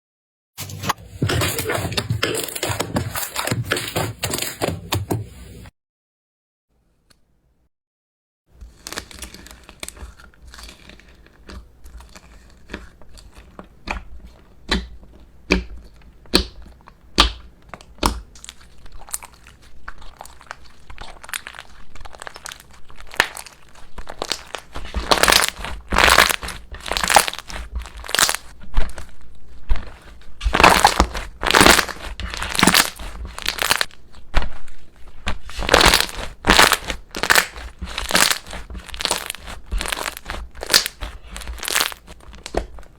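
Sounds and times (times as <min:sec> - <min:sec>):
slime crackling and crunching: 0:08.6 - 0:16.9, 0:17.7 - 0:42.9.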